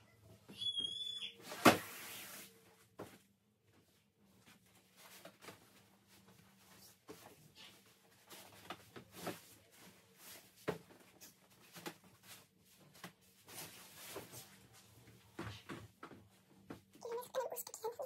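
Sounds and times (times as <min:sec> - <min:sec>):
sheet rustling: 0:01.4 - 0:15.3.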